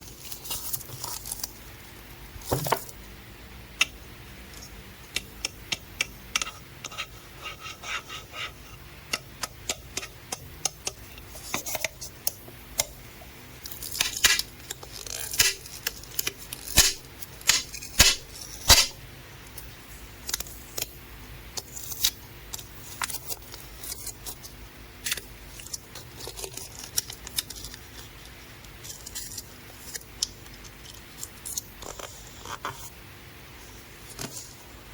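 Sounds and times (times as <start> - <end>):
paper rustling and crinkling: 0.0 - 1.6
scissors clicking: 15.3 - 15.6.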